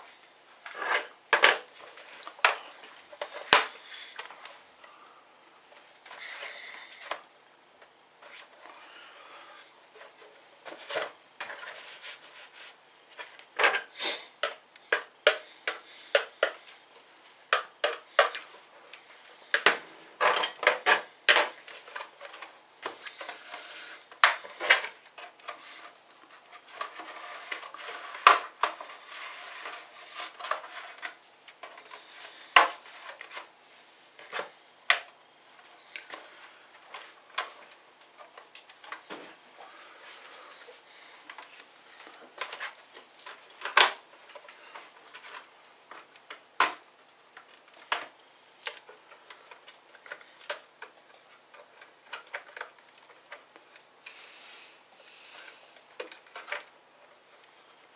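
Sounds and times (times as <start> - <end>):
plastic parts being handled: 0.0 - 5.0, 5.6 - 8.9, 9.5 - 54.2, 54.8 - 57.9.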